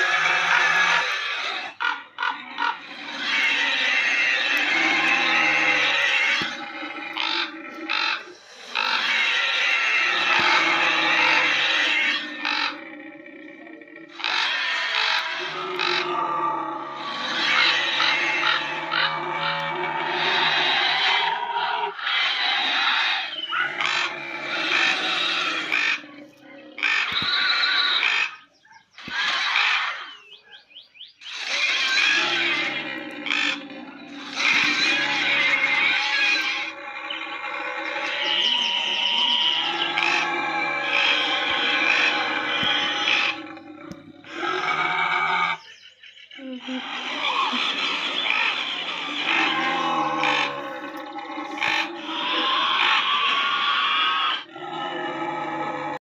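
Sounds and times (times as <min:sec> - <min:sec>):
creature calls and roars: 0:00.0 - 0:30.4, 0:31.2 - 0:45.6, 0:46.2 - 0:56.0
creature screeching squawks: 0:26.8 - 0:28.4, 0:29.0 - 0:30.1, 0:31.2 - 0:43.5, 0:46.8 - 0:54.5.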